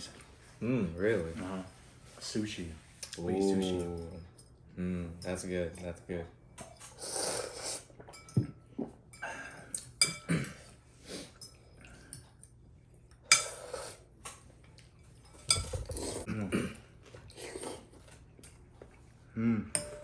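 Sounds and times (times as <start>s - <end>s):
spoons and chopsticks clinking bowls: 6.6s - 8.6s, 9.2s - 12.6s, 13.3s - 16.2s, 19.7s - 20.0s.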